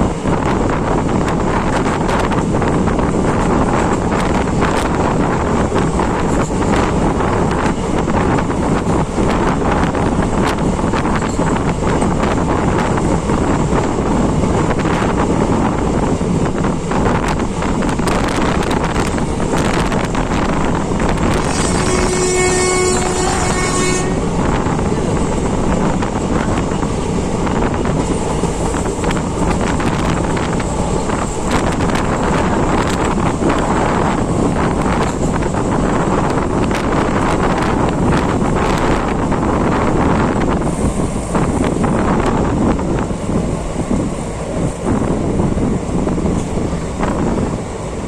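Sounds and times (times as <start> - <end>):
moving train running noise: 0.0 - 48.0
wind buffeting microphone: 0.0 - 48.0
train horn: 21.2 - 25.1.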